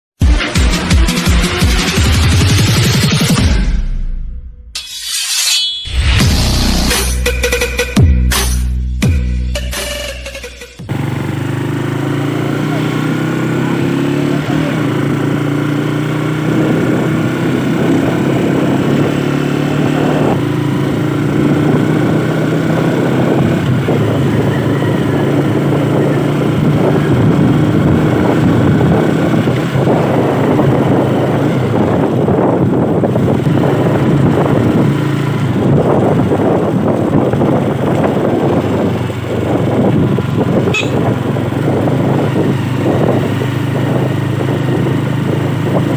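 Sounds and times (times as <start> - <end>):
motorcycle engine running: 10.8 - 45.9
wind rushing: 16.2 - 45.9.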